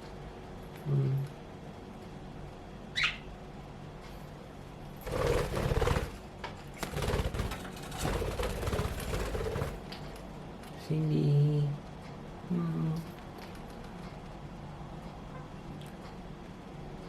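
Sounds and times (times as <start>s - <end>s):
budgerigar falling chirp: 3.0s - 3.2s
rapid buzzy rattling: 5.0s - 10.0s.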